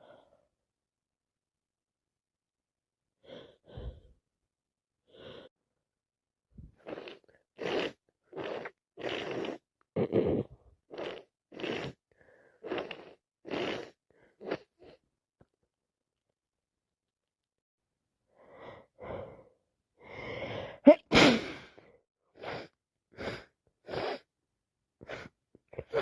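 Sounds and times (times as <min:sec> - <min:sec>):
woman gasping and sneezing: 0:20.2 - 0:21.8, 0:25.0 - 0:26.0.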